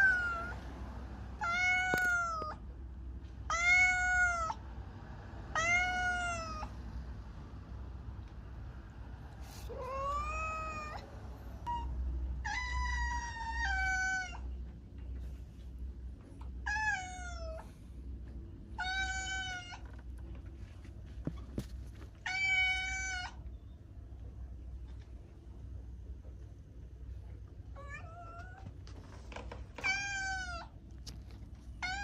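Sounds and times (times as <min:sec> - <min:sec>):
cat meowing: 0:00.0 - 0:00.6, 0:01.4 - 0:02.6, 0:03.5 - 0:04.6, 0:05.5 - 0:06.7, 0:09.6 - 0:14.5, 0:16.6 - 0:17.7, 0:18.8 - 0:19.9, 0:22.2 - 0:23.4, 0:27.7 - 0:28.7, 0:29.8 - 0:30.8, 0:31.8 - 0:32.0
steady low hum: 0:06.4 - 0:32.0.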